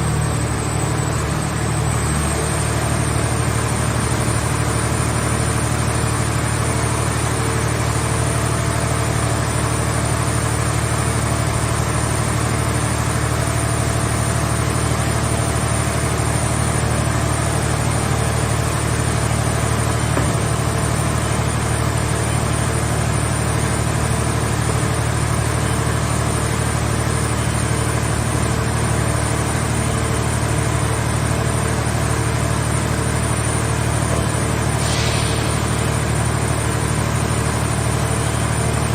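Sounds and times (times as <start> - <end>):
baler power unit droning: 0.0 - 38.9.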